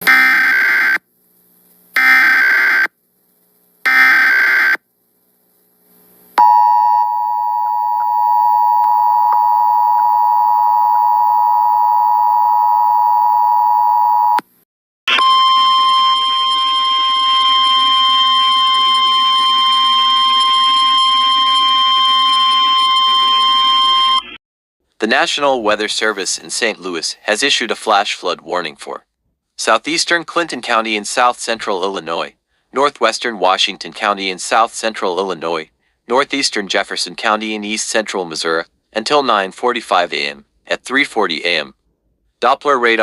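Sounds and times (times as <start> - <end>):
steady alarm tone: 0.0 - 1.0, 2.0 - 2.9, 3.9 - 4.8, 6.4 - 14.4, 15.1 - 24.4.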